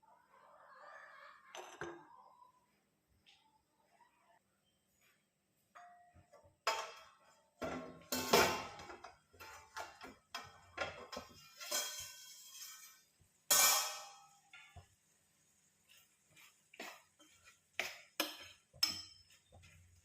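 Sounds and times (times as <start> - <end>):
metal kitchenware clanging: 5.7 - 14.9, 17.8 - 19.5.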